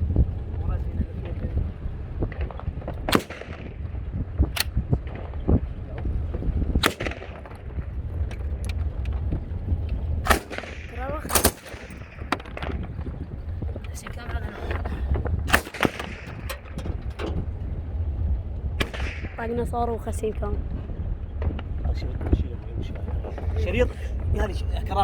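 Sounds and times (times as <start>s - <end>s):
steady low rumble: 0.0s - 25.0s
gunshots: 2.3s - 5.3s, 6.8s - 7.7s, 10.2s - 12.8s, 15.5s - 16.8s, 18.8s - 19.4s.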